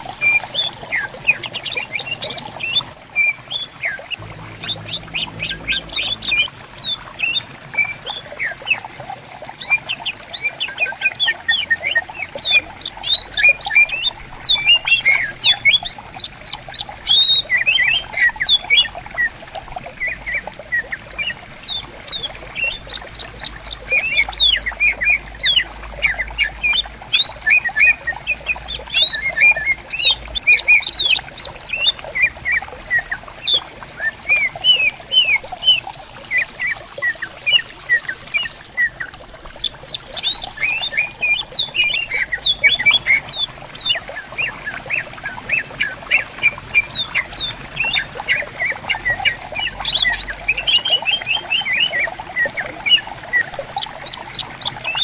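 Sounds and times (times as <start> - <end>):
stream babbling: 0.0 - 55.0
birds chirping and whistling: 0.2 - 8.8, 9.6 - 16.0, 17.0 - 19.3, 20.0 - 33.2, 36.7 - 53.5.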